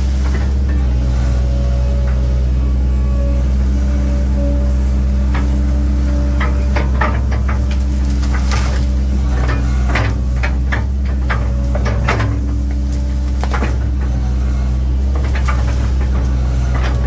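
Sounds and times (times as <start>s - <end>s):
excavator diesel engine running: 0.0s - 17.0s
sharp clunks and cracks of wood: 6.4s - 14.4s, 15.0s - 17.0s.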